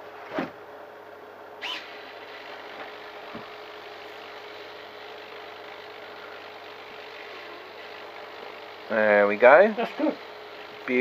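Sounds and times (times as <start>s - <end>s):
servo whine rising: 1.6s - 9.0s
servos humming: 1.6s - 11.0s.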